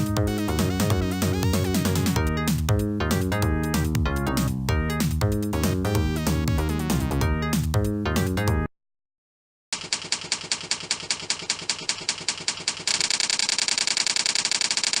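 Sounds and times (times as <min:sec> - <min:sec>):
fast even clicks: 0:09.8 - 0:15.0.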